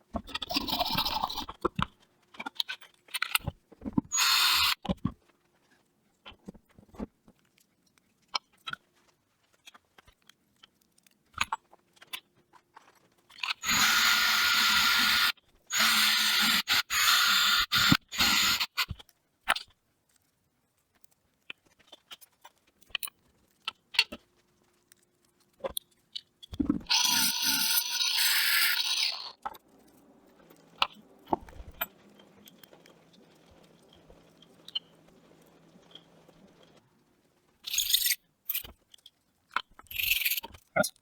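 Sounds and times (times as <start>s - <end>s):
loud hissing tool: 13.6s - 18.8s, 26.9s - 29.2s
tools clicking and scraping: 37.6s - 41.0s.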